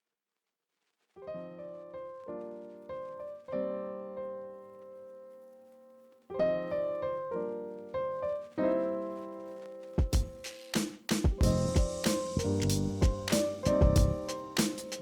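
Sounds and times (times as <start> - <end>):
piano chords ringing: 11.4 - 15.0.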